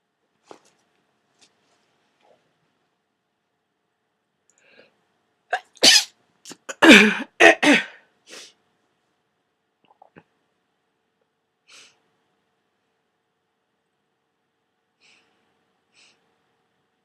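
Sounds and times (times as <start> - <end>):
person sneezing: 5.5 - 8.5
faint breaths: 14.9 - 16.4.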